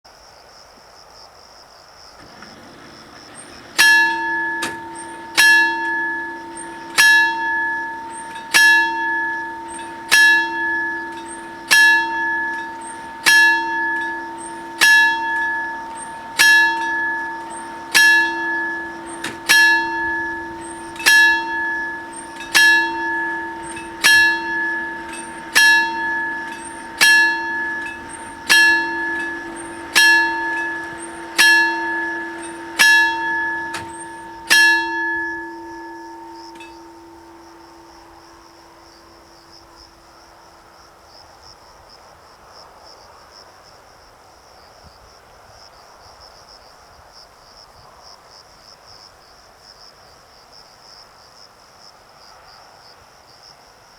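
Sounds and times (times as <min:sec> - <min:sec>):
level crossing warning bell: 0:02.2 - 0:40.8.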